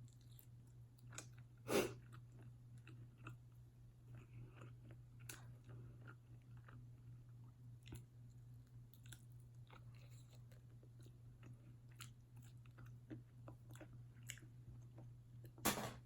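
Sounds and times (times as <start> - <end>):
person chewing food: 0.0 - 15.6
faint low hum: 0.0 - 16.0.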